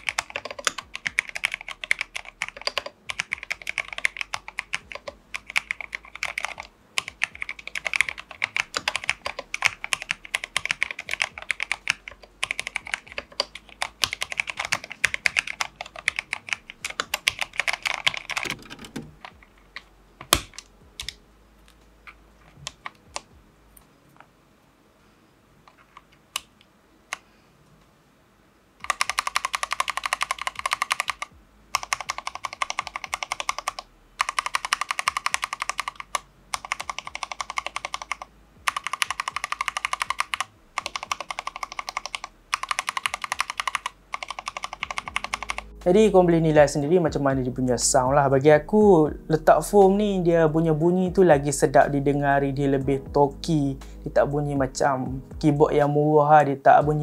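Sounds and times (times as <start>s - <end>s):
mechanical keyboard typing: 0.0s - 21.2s, 22.1s - 23.4s, 28.8s - 47.4s.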